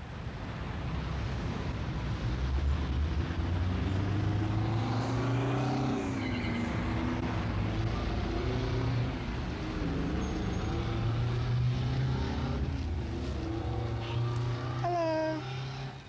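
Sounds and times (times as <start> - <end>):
vehicle engine running: 6.6 - 16.0.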